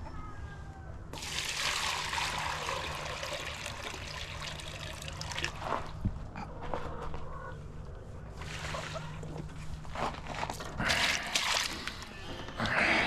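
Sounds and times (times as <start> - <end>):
water pouring into container: 1.2 - 6.0.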